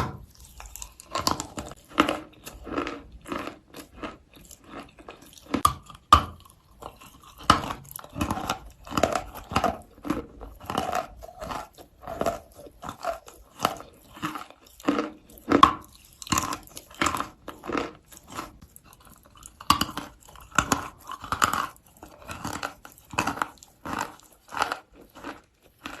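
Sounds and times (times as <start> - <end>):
person crunching chalk: 6.8 - 26.0.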